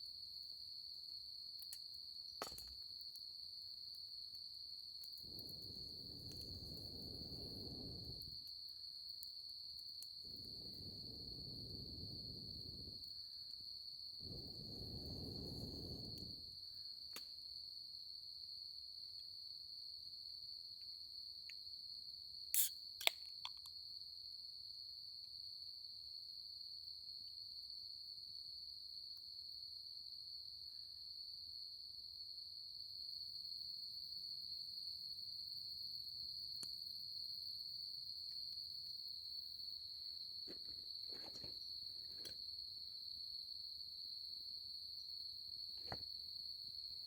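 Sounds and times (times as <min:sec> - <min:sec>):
crickets chirring: 0:00.4 - 0:17.6, 0:22.4 - 0:24.0, 0:32.2 - 0:47.0.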